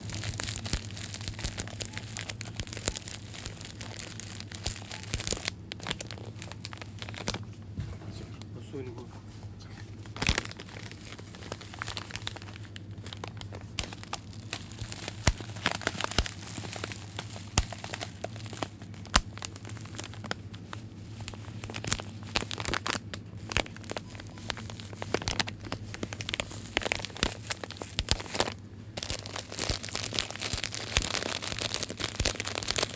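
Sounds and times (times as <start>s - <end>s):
plastic bag crinkling: 0.0s - 9.0s, 9.8s - 32.9s
steady low hum: 0.0s - 32.9s.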